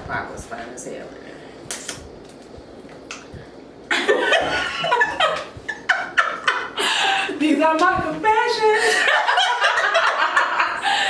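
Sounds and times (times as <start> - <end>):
woman laughing: 3.9 - 7.4, 8.7 - 11.0.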